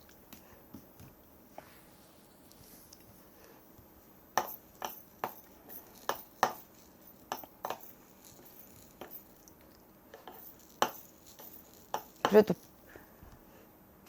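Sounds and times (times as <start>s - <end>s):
hard objects clinking on dish: 4.4s - 12.8s.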